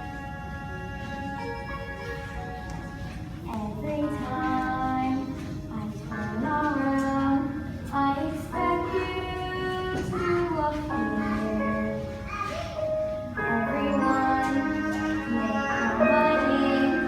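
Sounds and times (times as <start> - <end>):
instrumental accompaniment: 0.0 - 17.0
children singing: 3.5 - 17.0.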